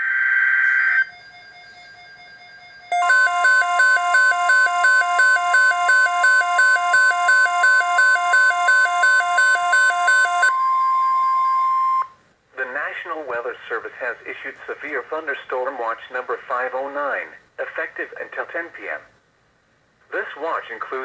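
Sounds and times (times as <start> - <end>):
warbling two-pitch electronic alarm: 0.0 - 12.1
steady alert tone: 2.9 - 12.1.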